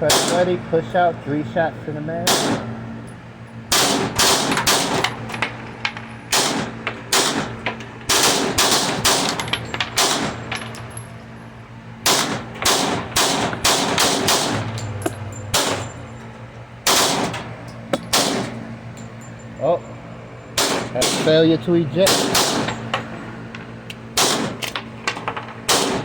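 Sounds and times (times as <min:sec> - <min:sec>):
pistol gunshots: 0:00.0 - 0:00.5, 0:02.3 - 0:02.7, 0:03.7 - 0:05.2, 0:06.3 - 0:09.4, 0:10.0 - 0:10.4, 0:12.0 - 0:15.9, 0:16.8 - 0:18.6, 0:20.6 - 0:21.3, 0:22.0 - 0:22.8, 0:24.2 - 0:24.7, 0:25.7 - 0:26.0.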